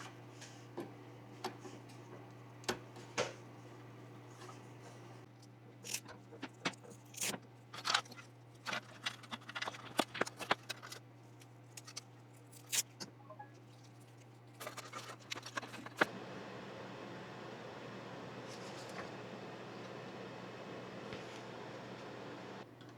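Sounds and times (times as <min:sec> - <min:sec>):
steady low hum: 0:15.3 - 0:22.9.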